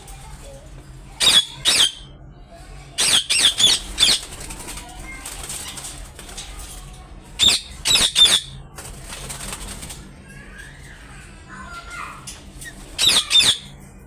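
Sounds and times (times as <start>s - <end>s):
wings flapping and rustling: 0.0s - 1.6s, 2.7s - 13.9s
parrots squawking: 1.2s - 2.1s, 3.0s - 4.6s, 7.3s - 8.6s, 10.9s - 13.7s.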